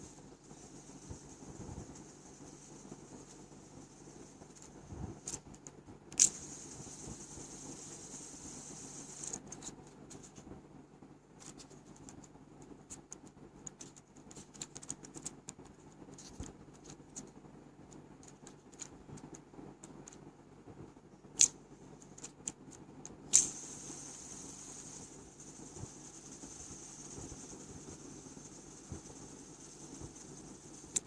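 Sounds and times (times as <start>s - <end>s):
handling clicks and scratches: 11.4s - 20.3s.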